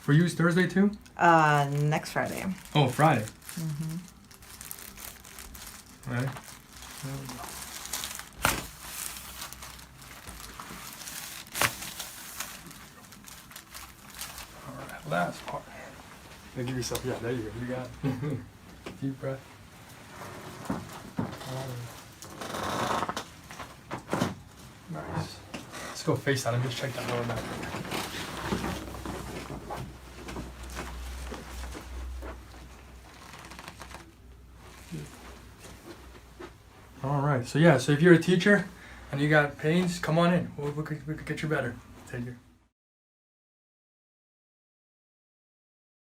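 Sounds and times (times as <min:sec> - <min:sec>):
rustling and crinkling on table: 0:02.2 - 0:37.0
soft rustling on padded table: 0:26.4 - 0:37.0.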